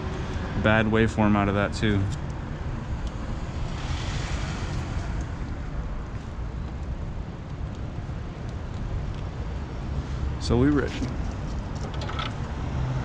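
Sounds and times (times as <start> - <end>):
low rumbling background noise: 0.0 - 13.0.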